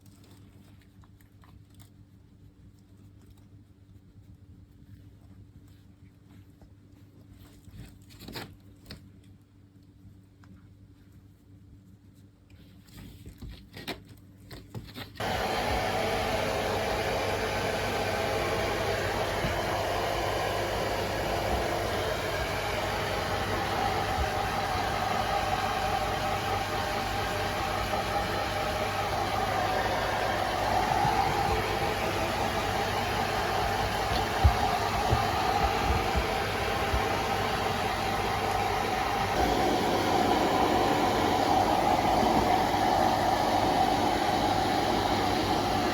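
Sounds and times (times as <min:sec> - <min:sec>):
hair dryer running: 0:15.2 - 0:45.9.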